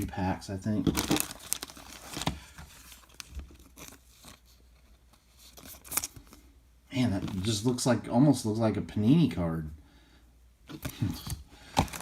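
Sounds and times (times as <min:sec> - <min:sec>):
cards crinkling and clicking: 0:00.8 - 0:04.5, 0:10.7 - 0:12.0
card pack wrapper tearing: 0:00.9 - 0:04.4.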